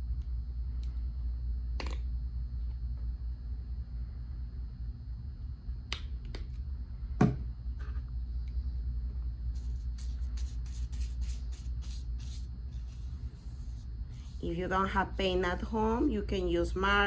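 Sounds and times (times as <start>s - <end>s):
low hum: 0.0s - 17.0s
paintbrush strokes on paper plate: 9.6s - 17.0s.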